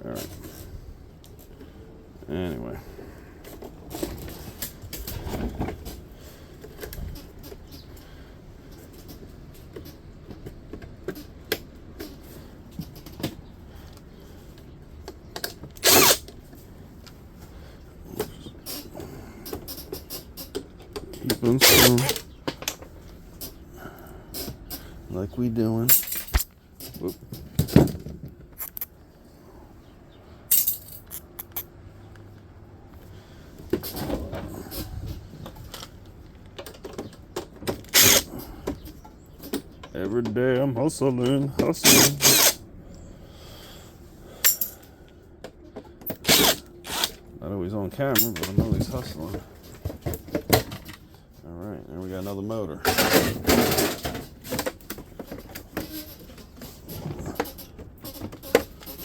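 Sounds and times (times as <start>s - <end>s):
metal and plastic parts clattering: 15.4s - 16.4s, 19.4s - 22.9s, 25.9s - 28.9s, 30.5s - 31.6s, 35.4s - 40.0s, 41.6s - 42.6s, 46.0s - 47.2s, 48.1s - 51.1s, 52.8s - 59.0s
small metal parts clinking: 15.8s - 16.2s, 21.5s - 22.2s, 25.9s - 27.0s, 28.6s - 28.9s, 30.5s - 31.6s, 37.9s - 38.3s, 41.8s - 42.6s, 44.4s - 44.8s, 46.1s - 47.2s
noisy scrape: 21.5s - 22.2s, 46.1s - 47.2s.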